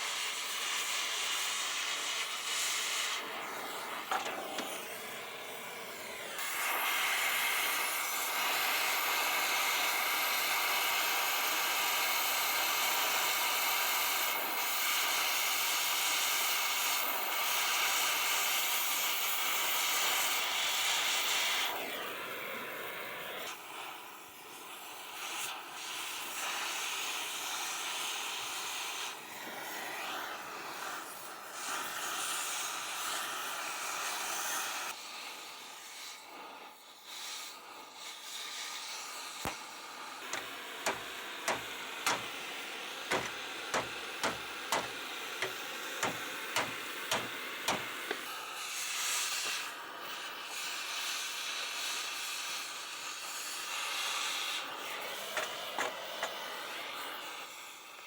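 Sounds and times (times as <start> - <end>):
cutting torch hissing: 0.0 - 58.0
sharp metallic taps: 40.3 - 42.4, 43.1 - 48.3.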